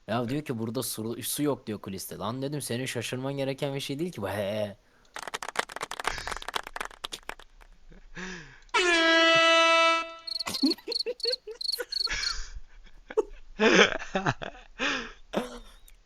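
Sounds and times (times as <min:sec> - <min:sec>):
flurry of clicks: 0:05.1 - 0:07.7.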